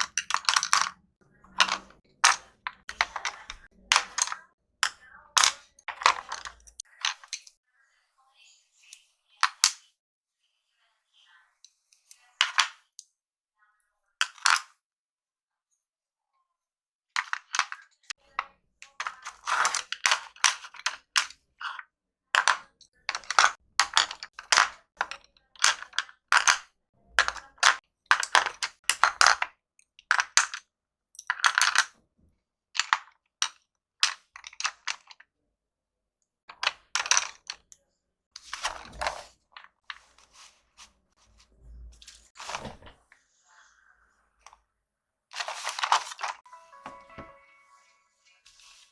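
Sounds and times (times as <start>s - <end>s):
wooden pencils clicking together: 0.0s - 7.6s, 18.4s - 21.8s, 22.4s - 30.6s, 31.2s - 32.0s, 32.8s - 35.2s, 36.5s - 37.8s, 45.4s - 47.4s.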